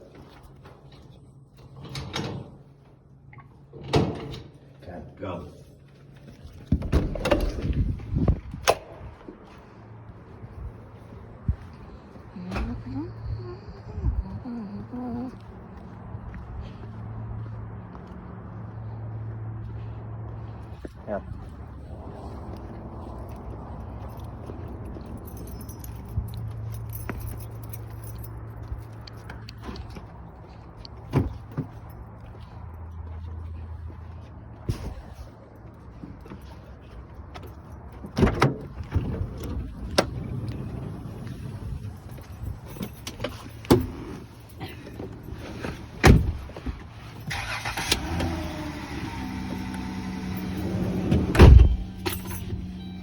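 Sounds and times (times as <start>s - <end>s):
keys jangling: 23.3s - 30.1s, 41.5s - 45.4s, 50.1s - 53.0s
car engine cranking and idling: 35.6s - 53.0s
car door slamming: 50.6s - 52.3s.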